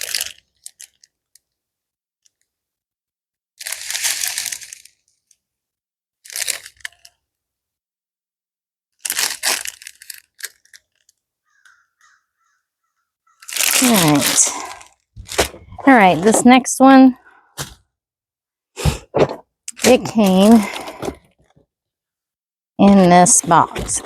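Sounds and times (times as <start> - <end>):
packaging crinkling and rustling: 0.0 - 1.4, 3.6 - 5.2, 6.2 - 7.2, 9.0 - 11.2, 13.4 - 16.6, 19.3 - 21.6.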